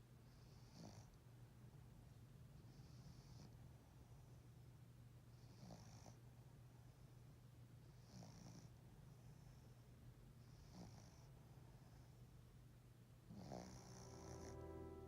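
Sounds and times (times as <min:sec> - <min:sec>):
dog snoring softly: 0:00.2 - 0:01.2, 0:02.6 - 0:04.4, 0:05.3 - 0:07.2, 0:07.8 - 0:09.8, 0:10.4 - 0:12.2, 0:13.3 - 0:14.6.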